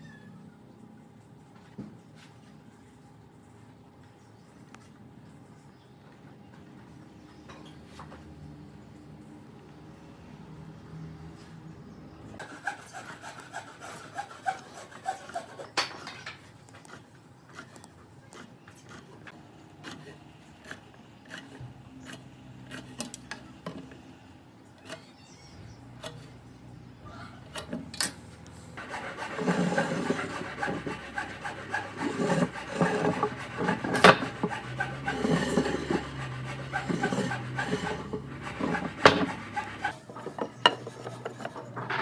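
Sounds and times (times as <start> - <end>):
hand tool scraping on wood: 12.4 - 16.2, 16.8 - 24.0, 28.8 - 41.8.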